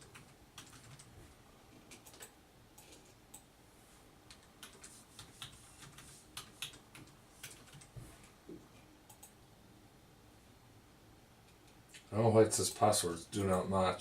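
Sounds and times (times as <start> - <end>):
typing on a computer keyboard: 0.0 - 1.1, 1.8 - 3.4, 4.3 - 8.0, 9.1 - 9.4.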